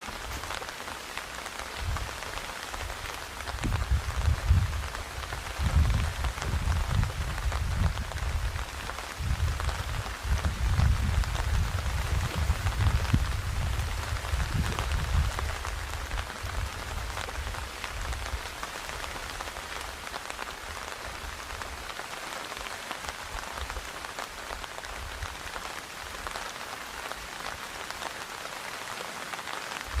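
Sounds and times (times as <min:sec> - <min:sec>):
rain pattering on tent fabric: 0:00.0 - 0:30.0
low rumble in gusts: 0:03.5 - 0:18.5.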